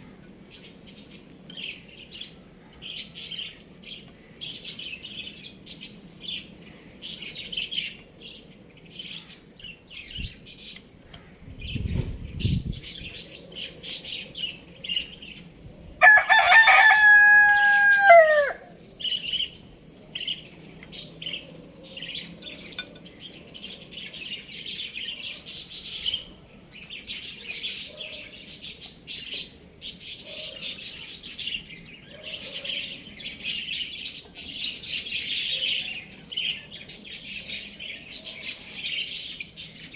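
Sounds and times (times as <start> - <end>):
small birds chirping: 0.0 - 39.9
rooster crowing: 16.0 - 18.8.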